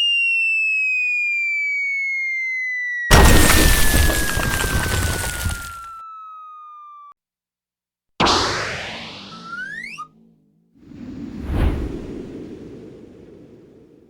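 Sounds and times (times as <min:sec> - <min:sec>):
cartoon falling whistle: 0:00.0 - 0:07.1, 0:08.2 - 0:10.1
loud explosion: 0:03.1 - 0:05.8.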